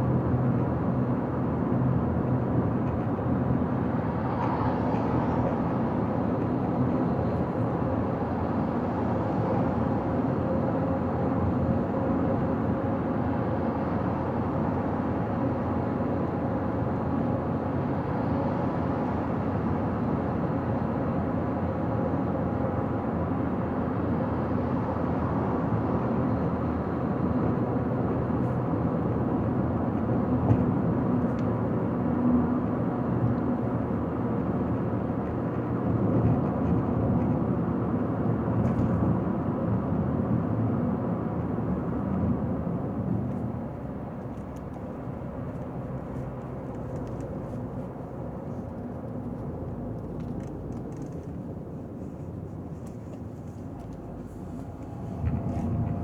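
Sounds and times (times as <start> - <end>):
car tyre and engine rumble: 34.0 - 56.0.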